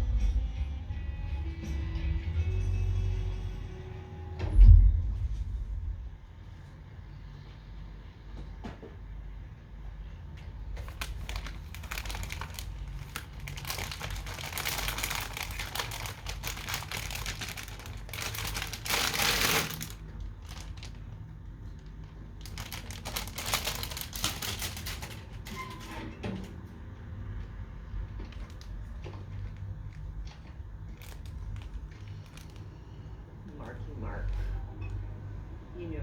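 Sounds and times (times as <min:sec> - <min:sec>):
packaging crinkling: 0:10.7 - 0:25.9, 0:28.3 - 0:32.8.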